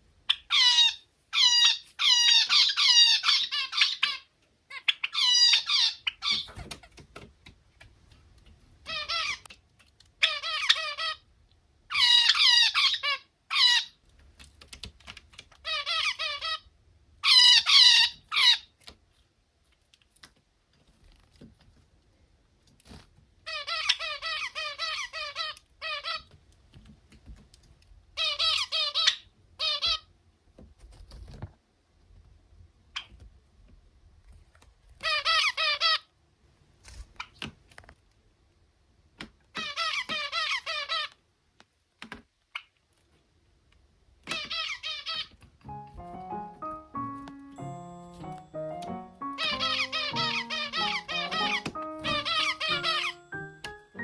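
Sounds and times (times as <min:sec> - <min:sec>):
finch singing buzzy phrases: 0:47.8 - 0:54.0.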